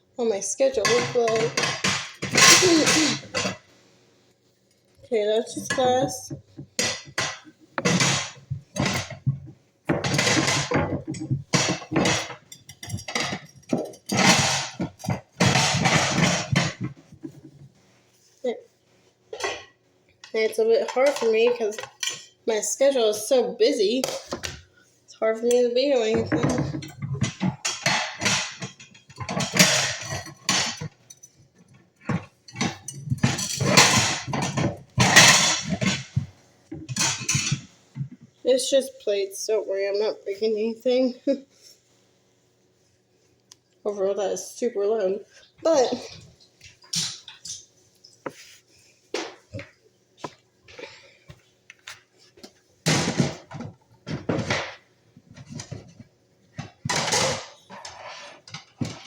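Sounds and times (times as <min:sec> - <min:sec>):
dishes clattering: 0:00.6 - 0:03.6, 0:05.4 - 0:17.7, 0:19.3 - 0:19.8, 0:20.7 - 0:22.4, 0:25.3 - 0:38.2, 0:52.4 - 0:59.0.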